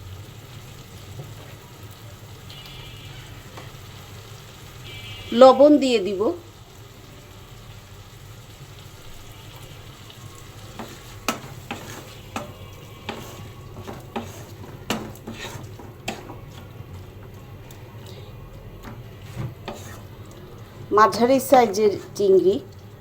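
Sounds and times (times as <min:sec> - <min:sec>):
shrimp sizzling in a pan: 0:00.0 - 0:23.0
spatula scraping a pan: 0:09.8 - 0:22.6.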